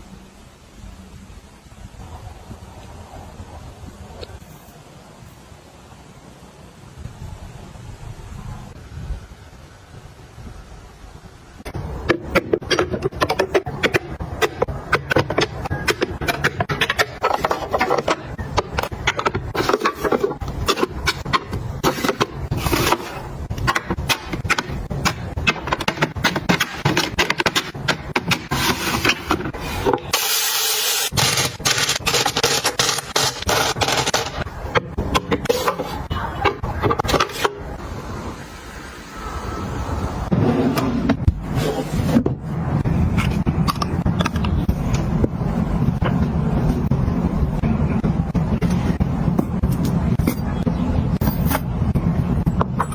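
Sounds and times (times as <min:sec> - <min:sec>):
objects clicking and scraping: 0:12.1 - 0:37.6.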